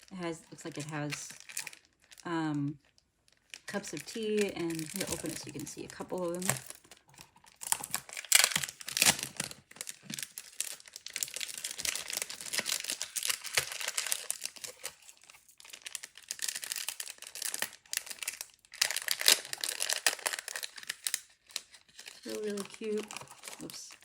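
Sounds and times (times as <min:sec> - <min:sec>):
packet crinkling and rustling: 0:00.0 - 0:24.0.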